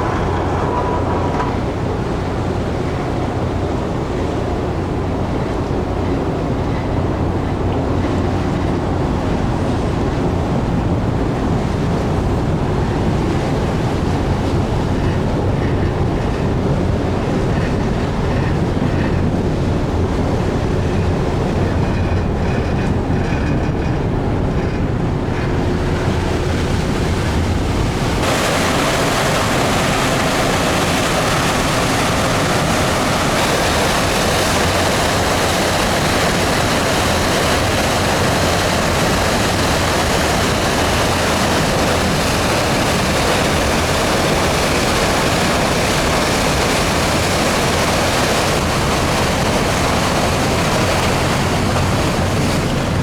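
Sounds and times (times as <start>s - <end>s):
ship hull grinding on wall: 0.0s - 3.6s
steady hiss of wind or water: 25.0s - 53.0s.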